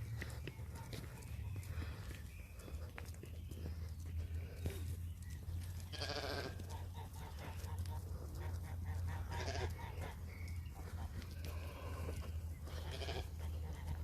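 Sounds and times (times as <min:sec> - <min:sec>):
livestock bleating: 0:05.8 - 0:07.4, 0:09.1 - 0:10.2, 0:11.2 - 0:14.0.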